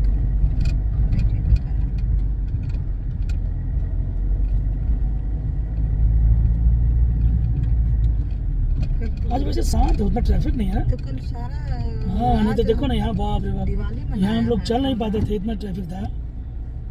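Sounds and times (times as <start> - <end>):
small clicks and rattles: 0.0 - 5.9
vehicle engine and road noise: 0.0 - 16.9.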